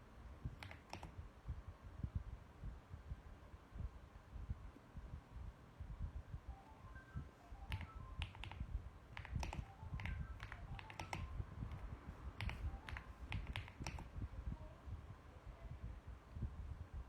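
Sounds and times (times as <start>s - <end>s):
mechanical keyboard typing: 0.5s - 1.2s, 6.5s - 14.2s.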